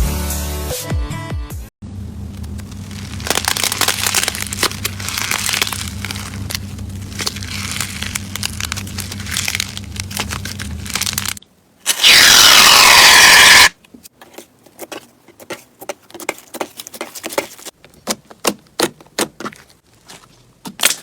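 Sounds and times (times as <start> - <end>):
slime crackling and popping: 2.3 - 13.7.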